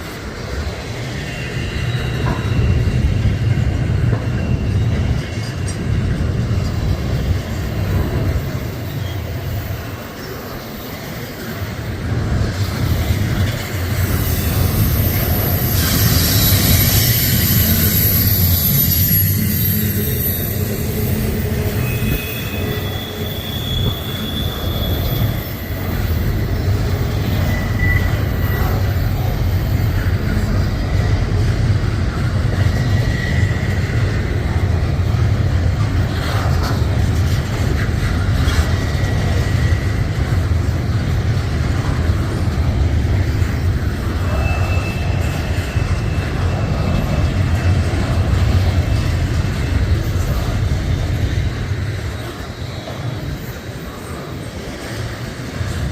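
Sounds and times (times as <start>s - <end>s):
train wheels rumbling on rail: 0.0s - 55.9s
high-pitched wheel squeals: 0.9s - 5.9s, 13.6s - 30.2s, 44.1s - 49.8s.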